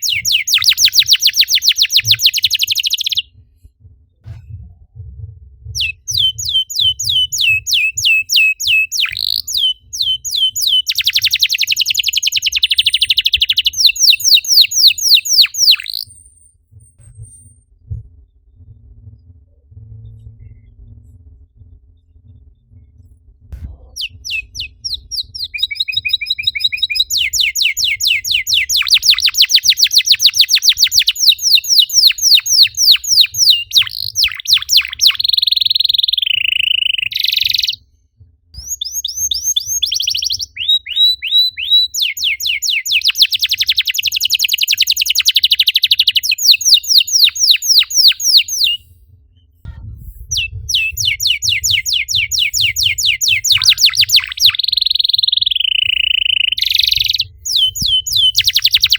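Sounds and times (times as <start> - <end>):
canary singing trills: 0.0 - 3.3, 5.8 - 16.2, 23.8 - 37.8, 38.6 - 48.9, 50.2 - 58.9.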